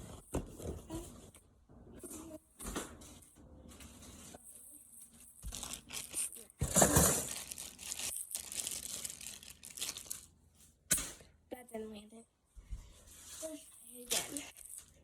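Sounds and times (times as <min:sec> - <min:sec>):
cardboard and plastic crinkling: 0:05.1 - 0:10.3.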